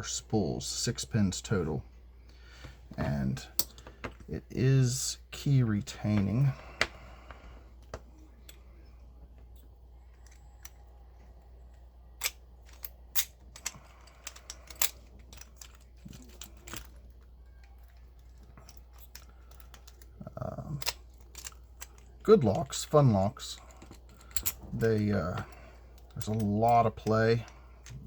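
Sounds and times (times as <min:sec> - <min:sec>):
steady low hum: 0:00.0 - 0:28.0
padlock and pick clicks: 0:12.1 - 0:20.1, 0:23.5 - 0:28.0.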